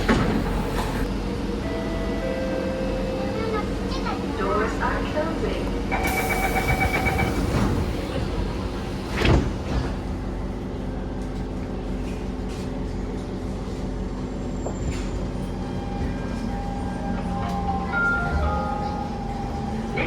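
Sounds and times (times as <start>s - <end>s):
sliding doors thudding shut: 0.0s - 1.1s, 6.7s - 10.2s
train electrical hum and rumble: 0.0s - 20.0s.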